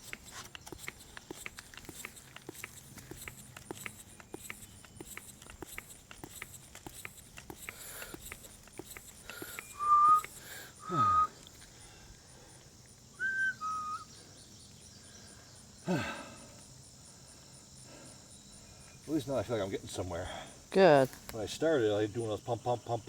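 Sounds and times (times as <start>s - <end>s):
hand pump ticking: 0.0s - 10.8s.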